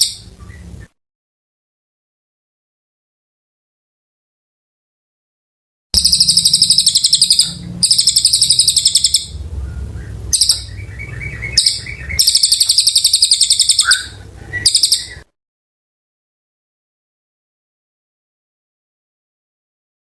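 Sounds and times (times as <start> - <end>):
songbird singing rapid trills: 0.0 - 0.9, 6.0 - 15.2
low hum: 0.1 - 0.9, 6.0 - 15.2.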